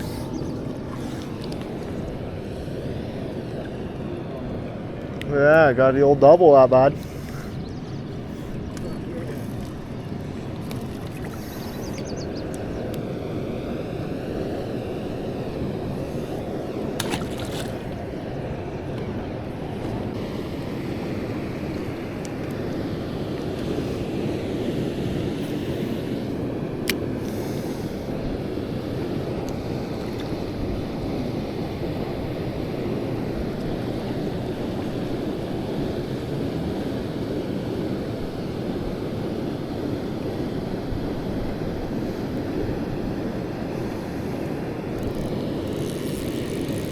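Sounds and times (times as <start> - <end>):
stream water rushing: 0.0 - 4.8, 6.6 - 28.1.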